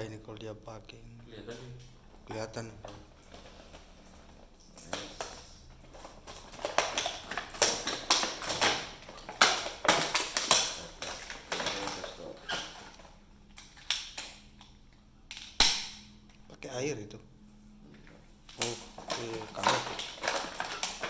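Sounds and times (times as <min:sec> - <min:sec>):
packaging rustling: 0:01.8 - 0:14.5, 0:18.2 - 0:21.0.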